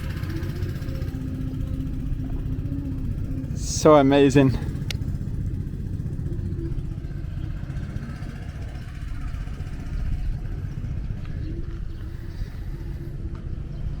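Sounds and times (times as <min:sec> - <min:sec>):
faint steady hum: 0:00.0 - 0:14.0
small engine running: 0:00.0 - 0:14.0.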